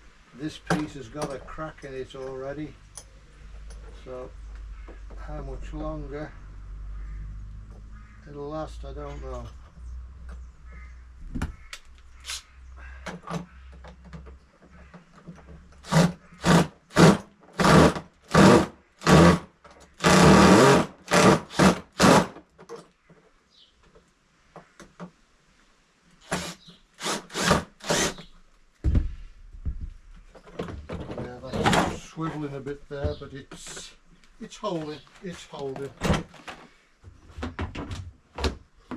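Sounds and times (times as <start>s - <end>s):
power drill driving screws: 15.8s - 19.4s, 20.0s - 22.4s, 26.2s - 28.3s.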